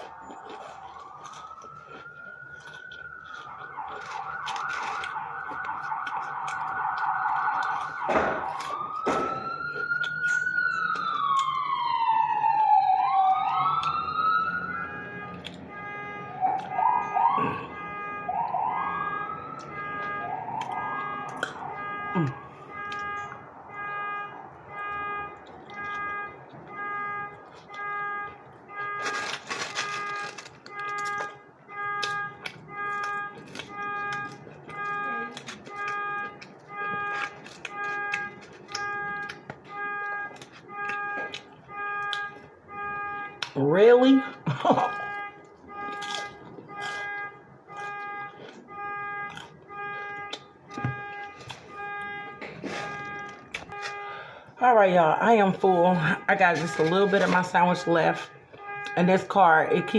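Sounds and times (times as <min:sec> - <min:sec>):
car alarm siren: 0:00.0 - 0:59.9
loud rustling noise: 0:29.0 - 0:31.1.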